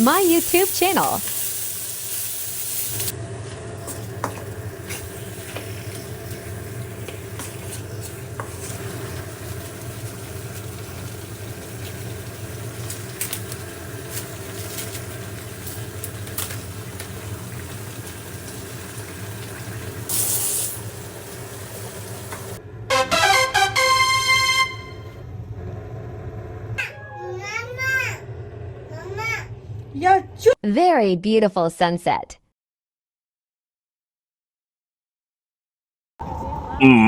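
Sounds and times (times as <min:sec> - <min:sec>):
hiss: 0:00.1 - 0:03.1, 0:20.1 - 0:22.6
food bubbling in a pot: 0:04.2 - 0:22.6.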